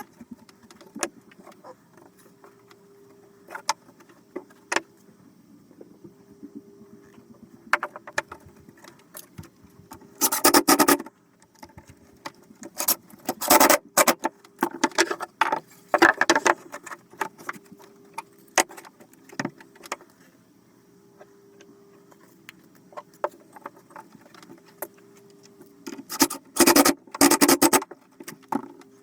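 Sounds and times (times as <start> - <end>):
faint steady hum: 0.0 - 29.0.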